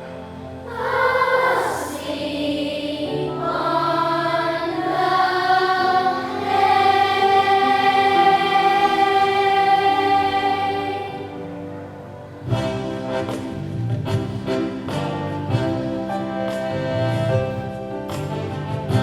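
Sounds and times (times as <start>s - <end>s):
choir singing: 0.6s - 11.7s.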